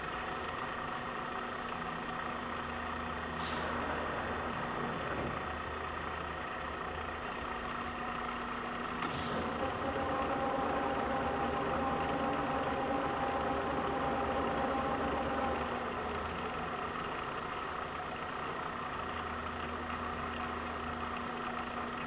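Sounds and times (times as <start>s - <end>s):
lathe humming: 0.0s - 22.0s.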